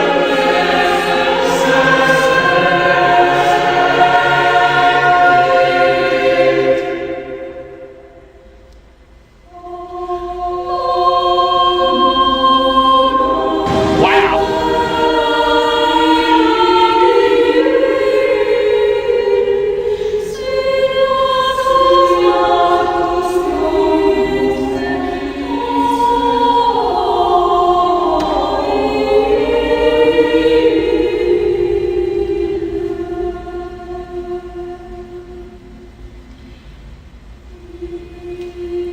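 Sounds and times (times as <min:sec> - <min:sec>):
choir singing held chords: 0:00.0 - 0:08.0, 0:09.5 - 0:35.6
brief sweeping sound: 0:13.7 - 0:15.7.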